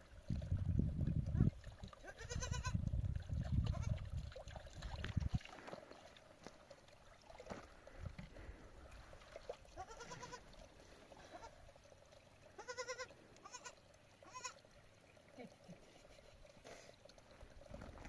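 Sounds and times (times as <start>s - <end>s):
sheep bleating: 9.8s - 10.4s, 12.6s - 14.6s.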